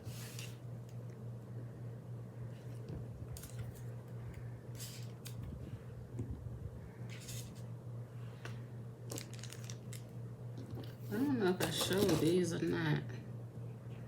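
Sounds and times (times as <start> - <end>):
fan humming: 0.0 - 14.0
packaging rustling: 9.1 - 10.1.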